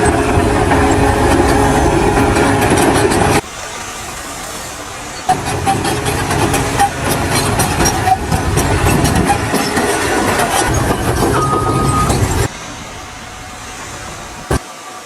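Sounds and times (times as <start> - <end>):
steady high tone: 0.0 - 14.6
mechanical clatter and clicks: 5.3 - 12.5.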